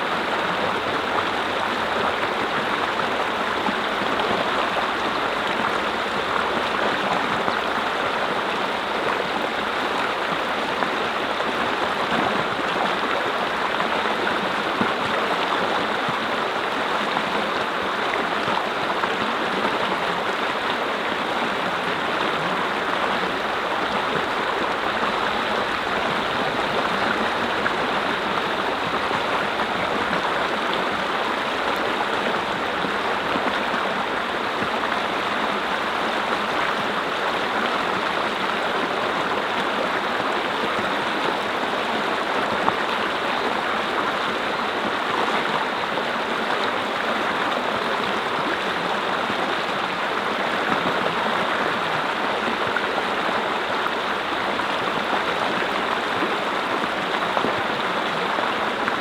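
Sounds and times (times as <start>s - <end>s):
brook flowing over rocks: 0.0s - 59.0s.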